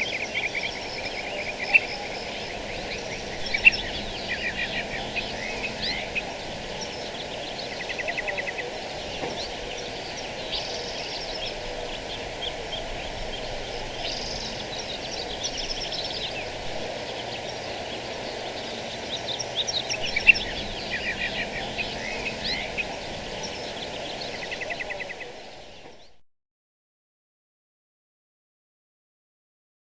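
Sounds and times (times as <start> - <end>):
steady low background noise: 0.0 - 26.2
wild birds chirping: 0.0 - 26.2.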